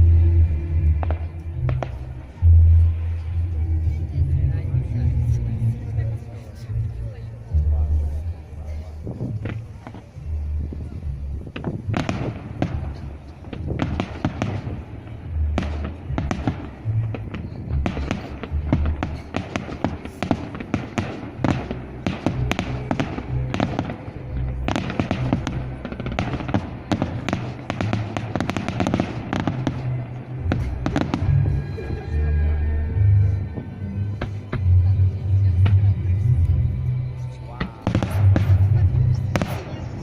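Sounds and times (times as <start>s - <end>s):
background music with bass line: 0.0s - 13.6s
fireworks bursting and crackling: 0.9s - 3.9s, 8.9s - 32.1s, 37.4s - 40.0s.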